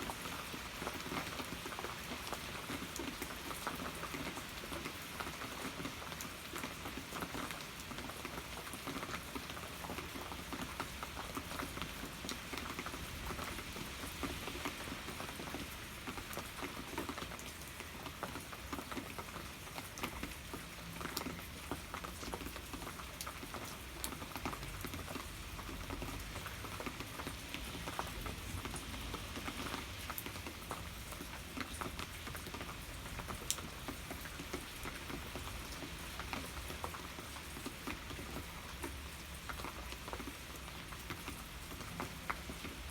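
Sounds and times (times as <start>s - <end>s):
steady rain hiss: 0.0s - 42.9s.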